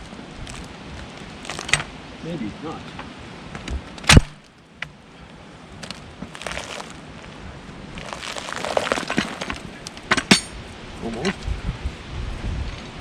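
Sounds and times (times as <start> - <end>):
bark and wood scraping and crunching: 0.0 - 1.9, 5.8 - 10.6.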